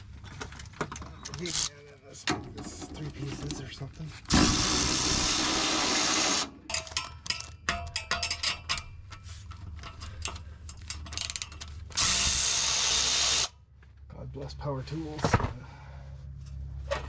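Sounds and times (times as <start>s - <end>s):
handheld power tool running: 4.3s - 6.5s, 11.9s - 13.5s
metal parts clicking and rattling: 6.7s - 12.0s.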